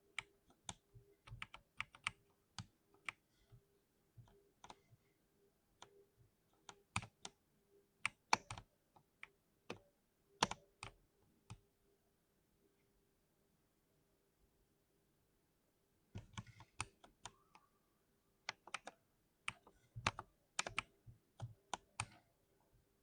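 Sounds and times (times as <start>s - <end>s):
mechanical keyboard typing: 18.5s - 22.2s.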